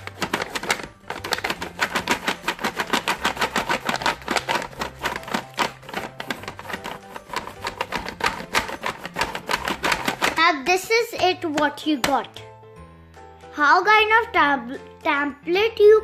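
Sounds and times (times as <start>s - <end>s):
crayon scribbling on paper: 0.0s - 10.4s
faint background music: 0.0s - 16.0s.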